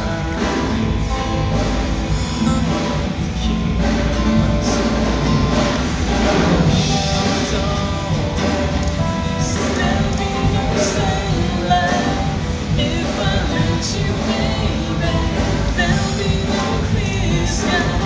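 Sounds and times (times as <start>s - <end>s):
person singing: 0.0s - 18.0s
strummed guitar: 0.0s - 18.0s.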